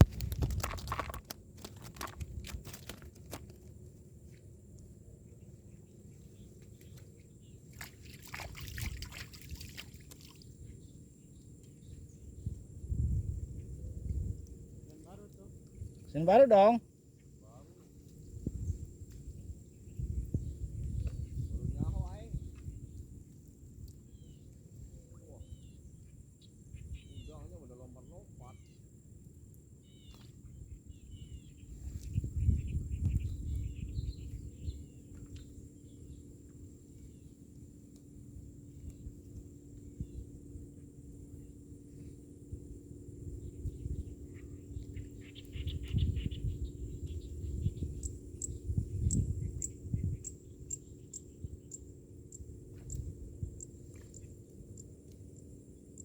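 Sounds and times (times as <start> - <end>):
steady low hum: 0.0 - 56.0
low rumble on microphone: 8.4 - 16.2, 17.2 - 28.8, 29.8 - 56.0
small birds chirping: 23.8 - 28.9, 29.8 - 36.3, 43.4 - 56.0
high-pitched insect-like whine: 33.6 - 56.0.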